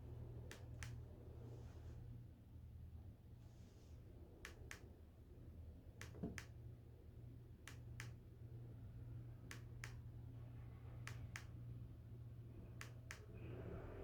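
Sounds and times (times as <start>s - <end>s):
paired sharp clicks: 4.4s - 4.9s, 7.7s - 8.2s, 9.5s - 10.0s, 11.1s - 11.6s, 12.8s - 13.3s.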